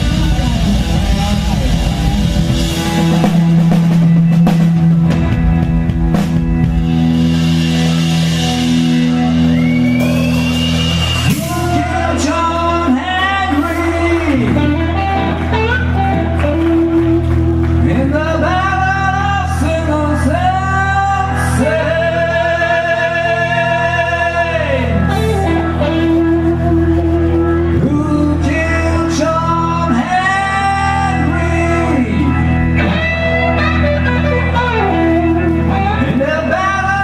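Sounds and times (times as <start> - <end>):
blues-rock band playing live: 0.0 - 37.0
person singing long notes: 11.2 - 37.0.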